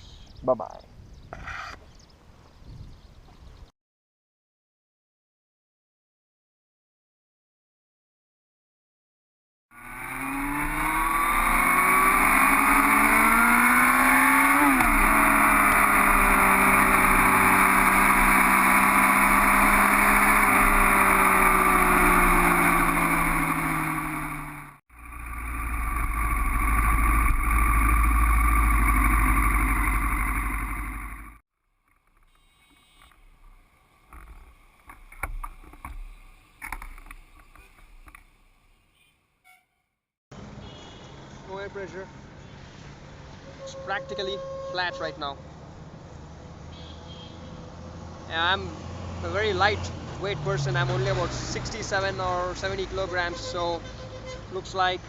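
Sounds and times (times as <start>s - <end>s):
wind rumble on microphone: 0.2s - 3.7s
motorcycle engine running: 9.8s - 31.4s.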